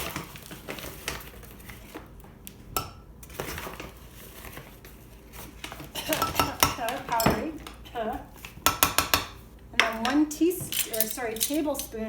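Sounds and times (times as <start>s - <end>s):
powder scraping and rustling: 0.0s - 2.2s, 3.2s - 6.0s.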